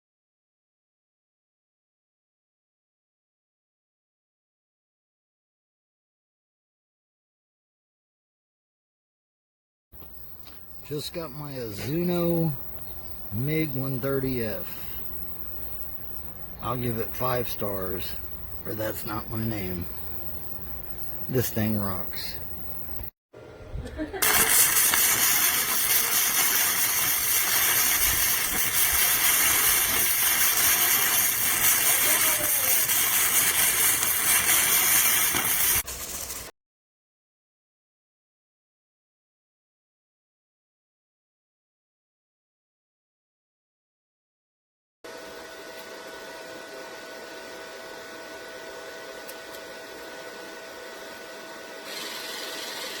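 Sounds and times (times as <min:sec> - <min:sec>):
cooling fan whirring: 0:10.2 - 0:35.7, 0:45.1 - 0:53.0
welding arc hissing and crackling: 0:24.1 - 0:36.5, 0:51.9 - 0:53.0.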